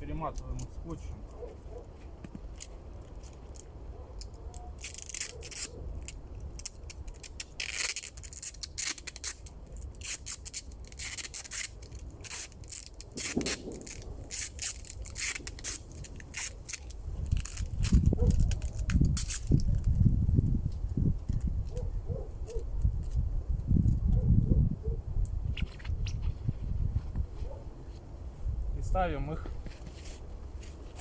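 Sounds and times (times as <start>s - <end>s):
tape ripping off roll: 4.6s - 20.0s.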